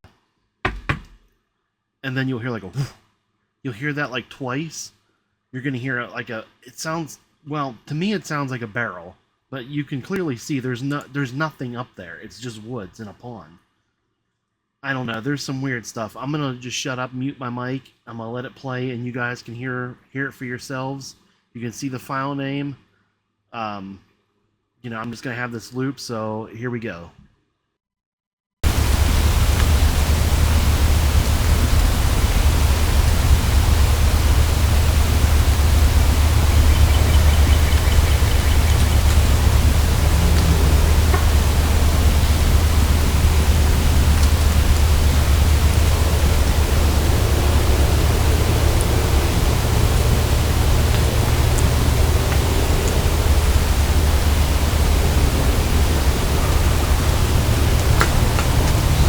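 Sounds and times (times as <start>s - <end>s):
low rumble: 28.6s - 59.0s
steady hiss: 28.6s - 59.0s.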